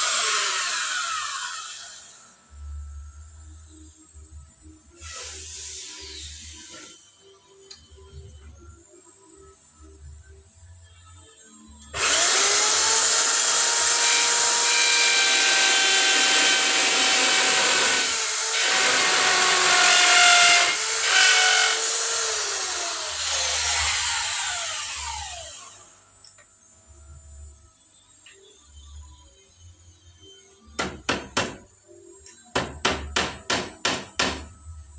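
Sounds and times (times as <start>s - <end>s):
electric power saw cutting wood: 0.0s - 2.2s, 12.0s - 25.9s.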